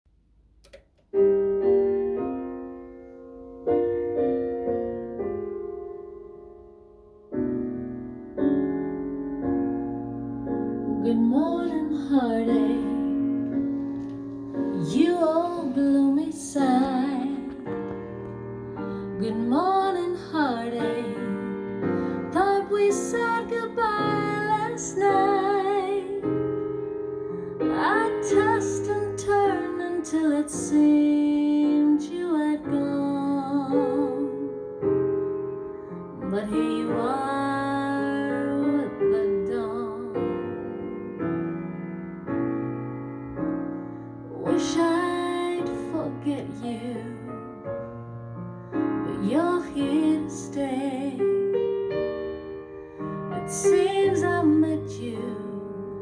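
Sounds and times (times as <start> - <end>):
piano chords: 0.2 - 56.0
woman singing with vibrato: 53.4 - 55.8.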